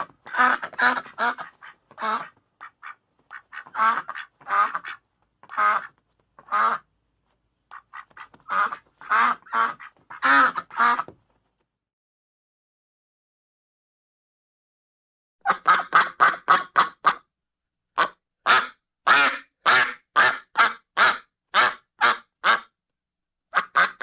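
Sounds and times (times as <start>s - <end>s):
duck quacking: 0.0s - 6.9s, 7.7s - 11.1s, 15.4s - 17.3s, 18.0s - 22.8s, 23.5s - 24.0s.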